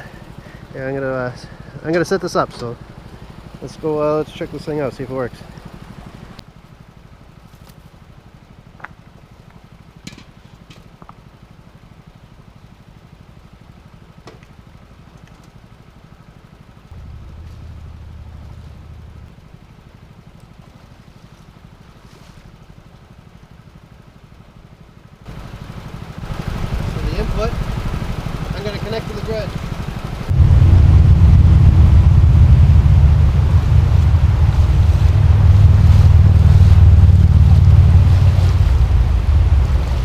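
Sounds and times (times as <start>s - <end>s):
dredge engine running: 0.0s - 6.4s, 14.9s - 21.7s, 25.3s - 40.0s.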